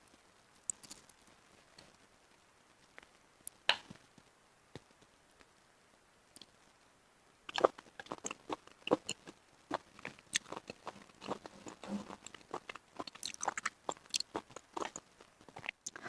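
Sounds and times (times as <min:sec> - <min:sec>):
wet chewing and mouth clicks: 0:07.5 - 0:16.0.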